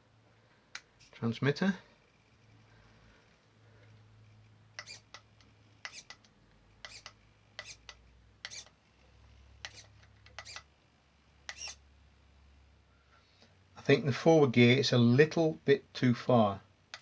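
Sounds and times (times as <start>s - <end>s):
faint low hum: 0.0s - 16.9s
servo whirring: 4.8s - 6.2s, 6.8s - 8.7s, 9.6s - 10.7s, 11.5s - 11.8s.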